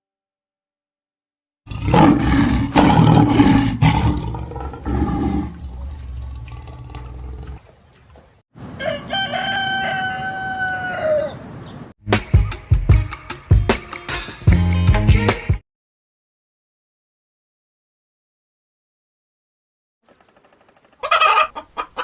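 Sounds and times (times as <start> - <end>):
farm animal calling: 21.0 - 22.0.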